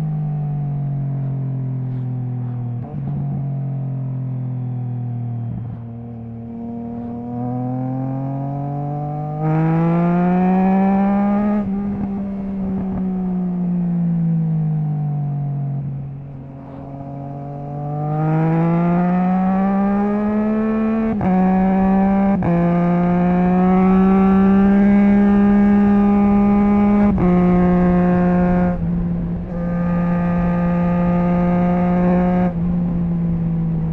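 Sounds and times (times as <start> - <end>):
quick gear upshifts: 1.2 - 8.0
motorcycle engine revving: 1.8 - 33.9.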